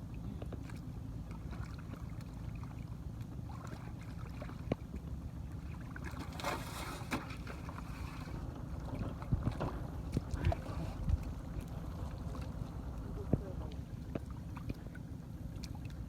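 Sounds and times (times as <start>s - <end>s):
wind rumbling on microphone: 7.4s - 14.9s.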